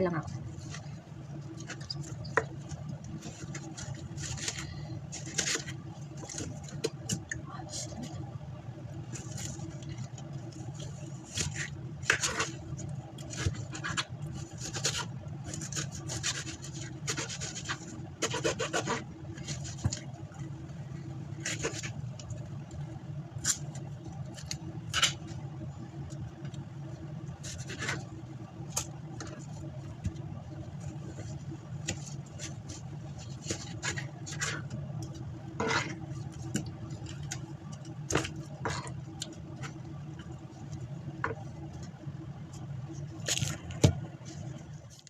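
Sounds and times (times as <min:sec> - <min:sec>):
steady low hum: 0:00.0 - 0:45.0
utensils scraping food: 0:35.6 - 0:36.2.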